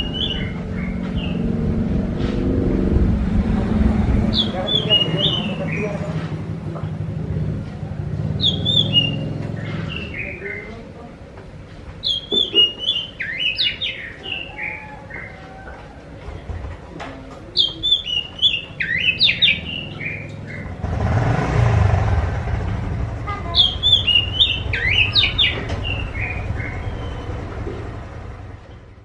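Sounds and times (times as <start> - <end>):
rushing noise with low rumble: 0.0 - 10.0
bird singing whistled notes: 8.4 - 10.7, 12.0 - 15.4, 17.6 - 20.7, 23.6 - 27.4.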